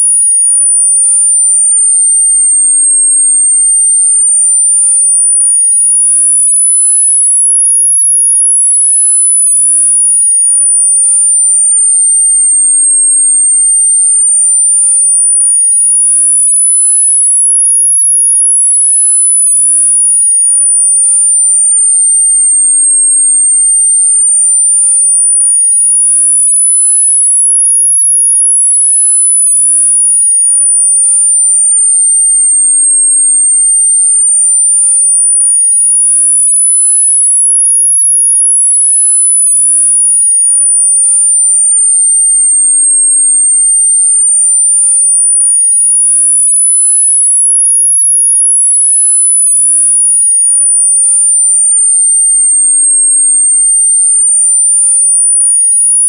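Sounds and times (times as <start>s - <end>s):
high pure tone gliding in pitch: 30.2s - 56.0s.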